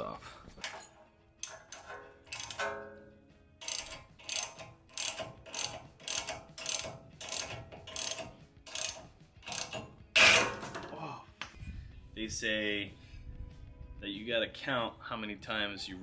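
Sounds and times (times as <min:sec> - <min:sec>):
ratchet wrench clicking: 0:00.6 - 0:03.0, 0:03.6 - 0:10.8.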